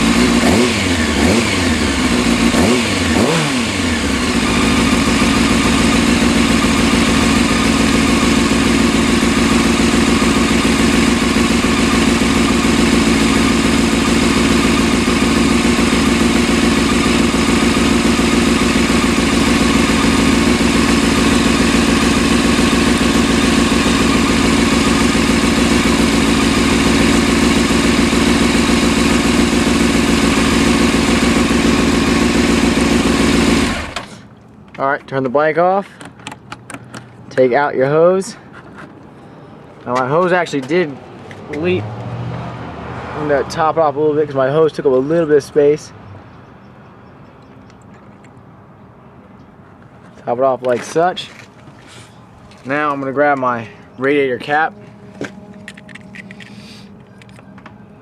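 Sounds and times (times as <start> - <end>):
motorcycle engine running steadily: 0.0 - 34.8, 49.3 - 58.0.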